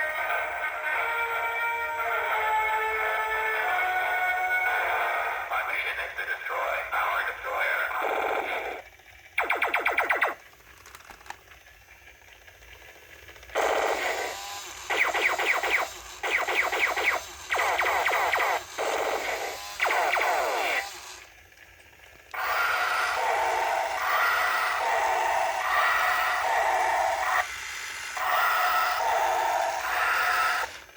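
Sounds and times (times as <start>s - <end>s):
steady whirring: 0.0s - 30.9s
toy robot falling-pitch zaps: 9.4s - 11.2s, 13.5s - 21.4s, 22.4s - 30.8s.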